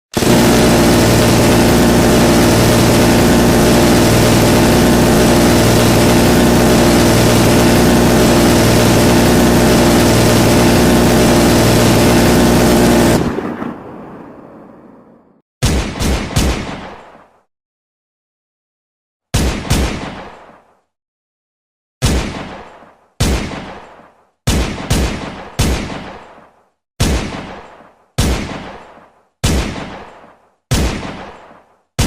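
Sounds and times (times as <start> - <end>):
machine gun firing continuous burst: 0.2 - 13.4.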